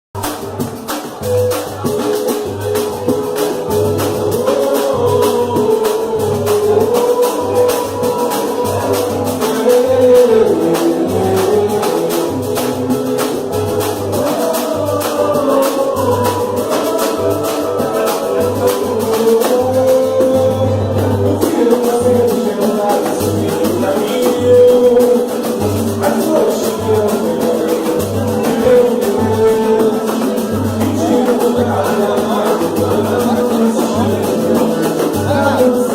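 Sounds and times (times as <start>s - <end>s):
fast shaker percussion: 0.2s - 35.9s
sung melody: 0.2s - 35.9s
low drum beats: 23.1s - 35.9s.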